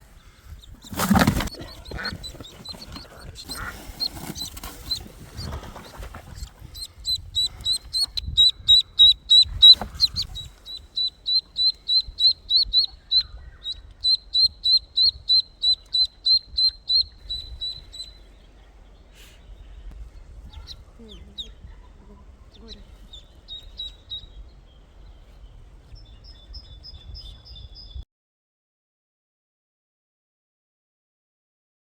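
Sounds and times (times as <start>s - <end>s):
rustles and bumps: 0.2s - 8.2s, 9.4s - 10.6s
duckling peeping: 0.2s - 18.6s, 19.2s - 28.0s.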